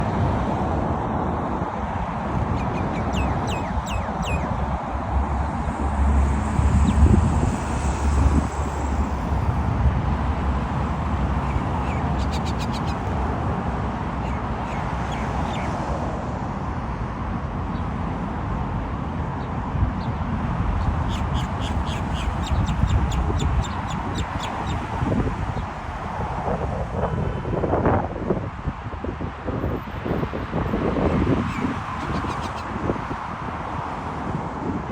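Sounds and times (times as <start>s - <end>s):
wind rumble on microphone: 0.0s - 34.9s.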